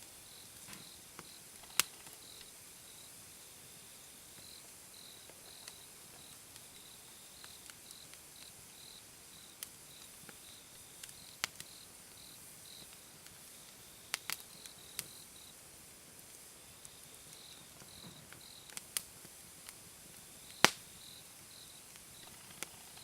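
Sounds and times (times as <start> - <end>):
insect chirping: 0.2 - 15.6, 16.4 - 18.8, 20.2 - 23.0
campfire crackling and popping: 0.3 - 23.0.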